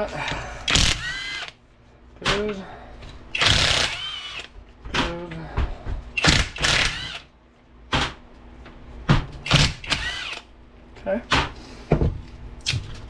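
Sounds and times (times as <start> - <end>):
power tool whirring: 0.7 - 1.6, 3.3 - 4.5, 6.2 - 7.3, 9.4 - 10.5.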